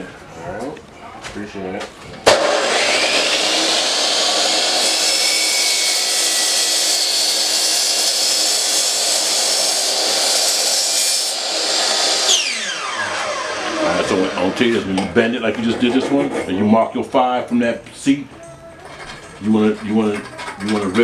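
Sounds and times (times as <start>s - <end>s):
power tool running: 2.3s - 14.8s.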